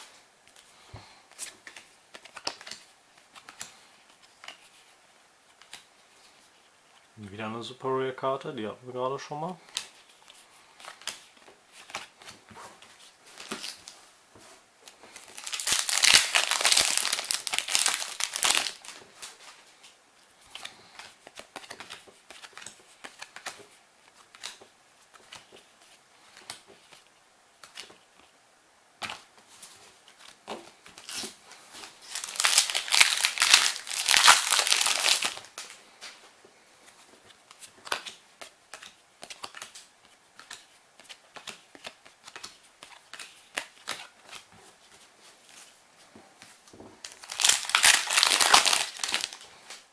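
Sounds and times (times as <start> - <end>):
foil packs tearing and crinkling: 15.2 - 19.0, 32.0 - 35.6, 47.1 - 49.4.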